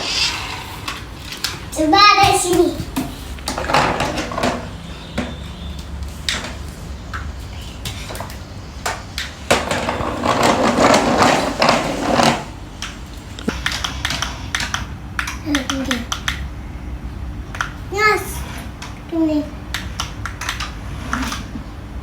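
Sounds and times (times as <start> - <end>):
plastic toys clattering: 0.1 - 16.4.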